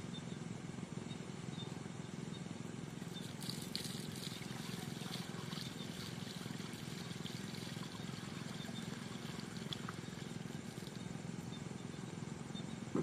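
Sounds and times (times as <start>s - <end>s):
water flowing: 3.2s - 11.2s.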